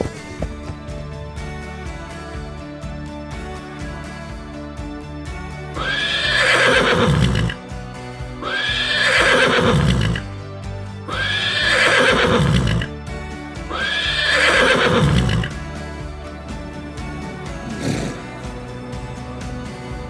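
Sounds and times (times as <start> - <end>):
background music: 0.0 - 20.0
horse neighing: 5.8 - 7.6, 8.4 - 10.2, 11.1 - 12.9, 13.7 - 15.5.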